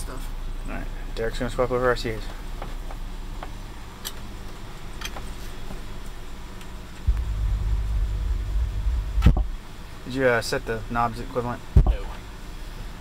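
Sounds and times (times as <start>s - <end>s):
vehicle engine humming: 3.1s - 10.9s
loud low rumble: 7.0s - 9.8s.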